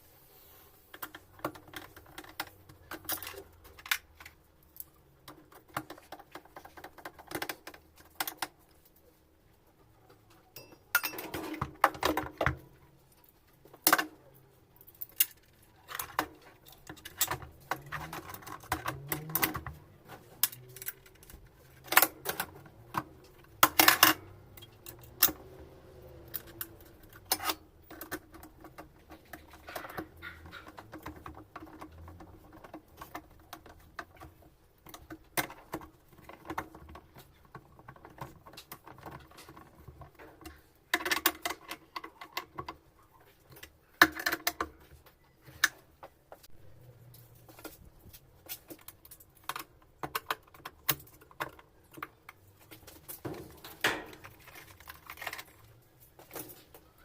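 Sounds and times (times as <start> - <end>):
metal tools clinking: 10.6 - 11.6.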